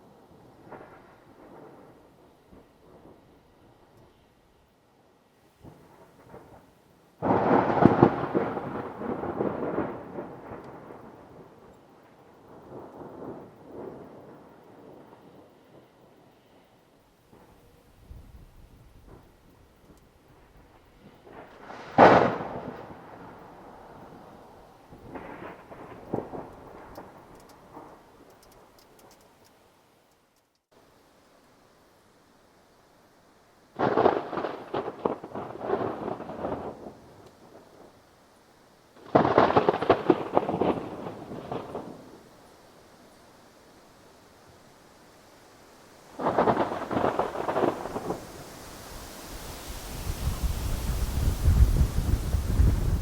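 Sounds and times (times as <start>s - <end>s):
thunder crack and rumble: 0.1s - 4.0s, 5.6s - 16.1s, 17.3s - 28.8s, 33.7s - 38.0s, 39.0s - 42.3s, 46.1s - 48.9s, 49.8s - 53.0s.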